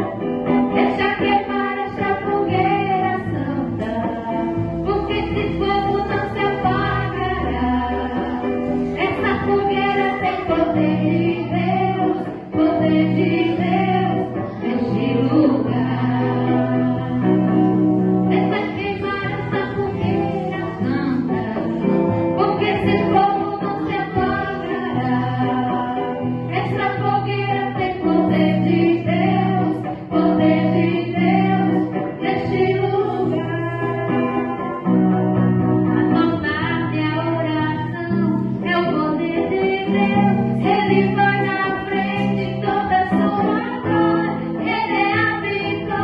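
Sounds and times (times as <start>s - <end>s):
gospel singing voices: 0.0s - 35.3s
instrumental backing: 0.0s - 46.0s.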